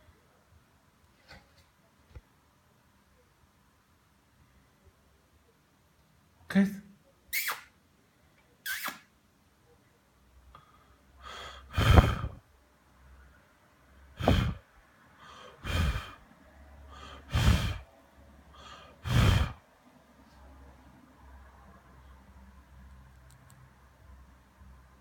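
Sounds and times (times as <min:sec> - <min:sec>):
person breathing hard: 0:10.6 - 0:12.4, 0:14.1 - 0:19.7.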